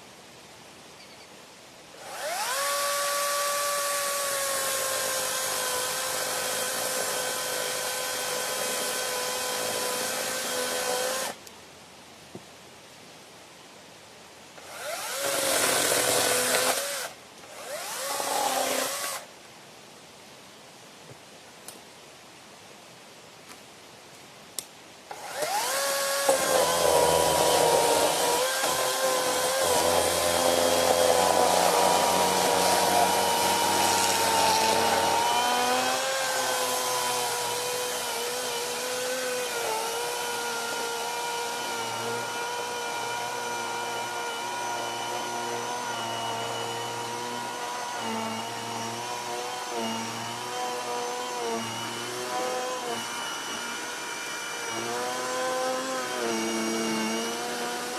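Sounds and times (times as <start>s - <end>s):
electric chainsaw motor whining: 2.0s - 4.0s, 25.1s - 57.9s.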